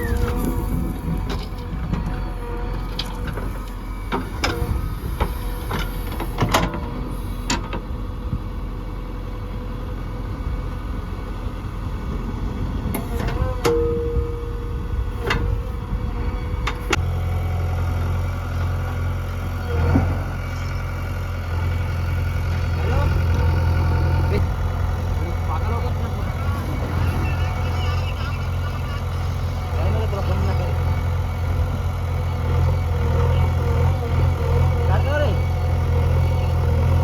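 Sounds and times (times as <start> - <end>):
clunks and knocks: 0.0 - 7.9, 19.8 - 20.4
diesel engine running: 0.0 - 37.0.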